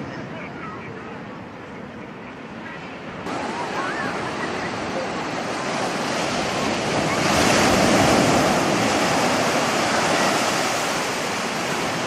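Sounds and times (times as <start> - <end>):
wind on microphone: 0.0 - 12.0
ocean surf washing in: 2.4 - 12.0.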